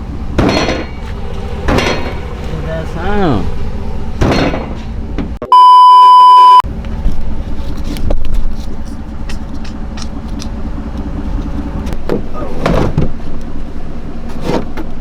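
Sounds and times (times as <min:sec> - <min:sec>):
car engine rumble: 0:00.0 - 0:05.5, 0:06.5 - 0:15.0
censor bleep: 0:05.4 - 0:06.6.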